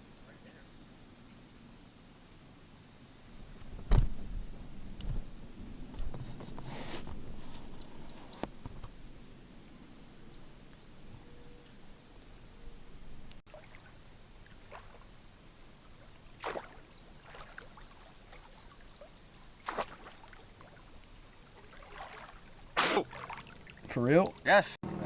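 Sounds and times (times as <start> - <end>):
sharp water splashes: 13.5 - 15.2, 16.0 - 24.4
water splashing softly: 13.5 - 24.5.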